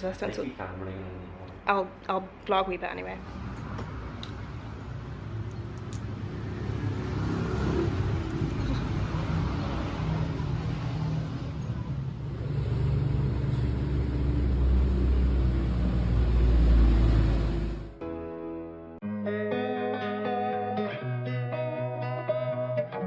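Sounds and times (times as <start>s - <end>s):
vehicle engine and road noise: 3.0s - 18.0s.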